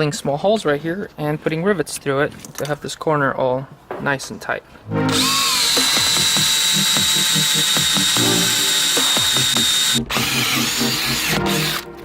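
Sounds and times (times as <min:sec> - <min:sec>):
power drill boring metal: 0:05.1 - 0:11.8.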